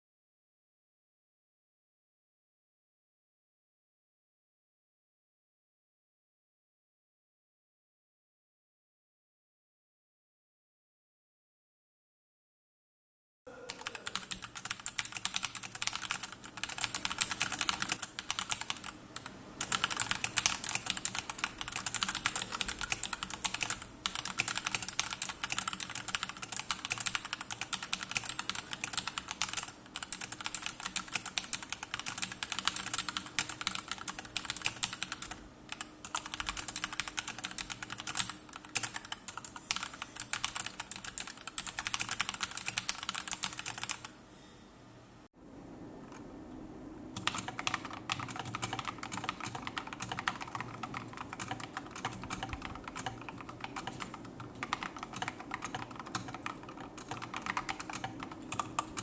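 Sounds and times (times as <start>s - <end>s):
fast typing on mechanical keyboard: 13.7s - 44.1s, 47.2s - 59.0s.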